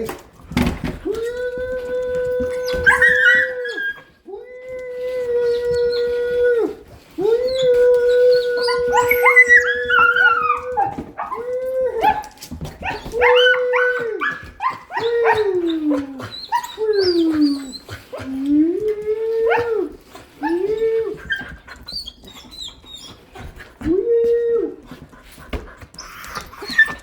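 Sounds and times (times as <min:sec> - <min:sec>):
dog howling: 0:01.0 - 0:22.0
dog yelping and whining: 0:02.4 - 0:04.8, 0:05.4 - 0:23.9, 0:25.9 - 0:27.0.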